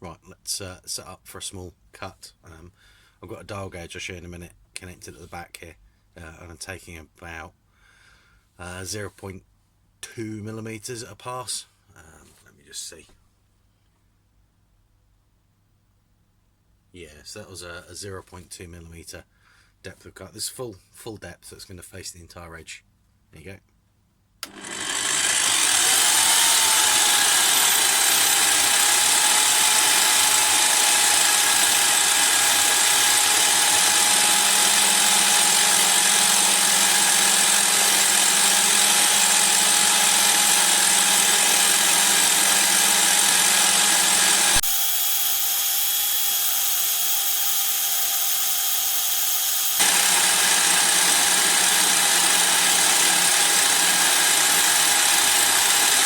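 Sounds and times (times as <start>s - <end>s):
pillar drill whining: 24.4s - 56.0s.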